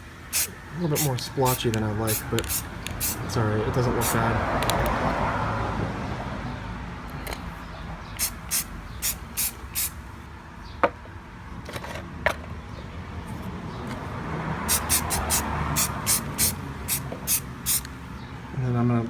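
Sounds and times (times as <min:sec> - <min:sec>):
spray can hissing in puffs: 0:00.3 - 0:03.3, 0:08.2 - 0:10.0, 0:14.7 - 0:17.9.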